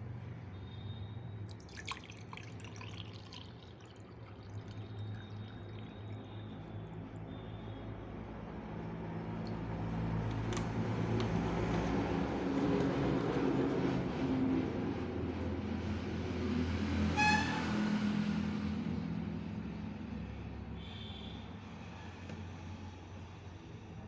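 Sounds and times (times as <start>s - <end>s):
water dripping into vessel: 1.5s - 13.6s.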